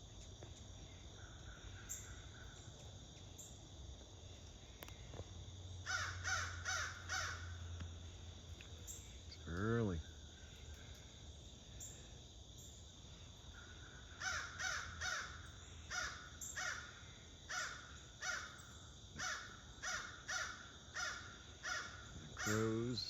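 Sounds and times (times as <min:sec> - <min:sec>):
crows cawing: 0:01.2 - 0:02.6, 0:05.8 - 0:07.7, 0:13.5 - 0:18.6, 0:19.2 - 0:23.0.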